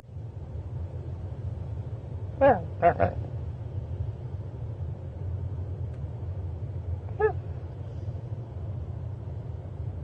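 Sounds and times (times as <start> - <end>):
steady low rumble: 0.0 - 10.0
yelp-like dog call: 2.4 - 3.2, 7.1 - 7.4.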